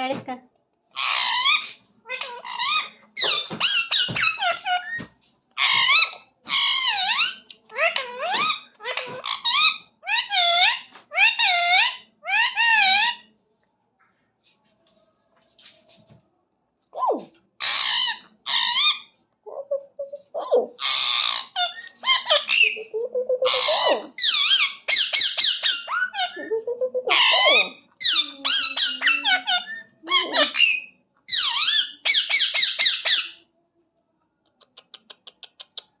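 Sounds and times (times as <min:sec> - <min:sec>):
parrot squawking and screeching: 0:00.9 - 0:13.3, 0:17.6 - 0:33.5.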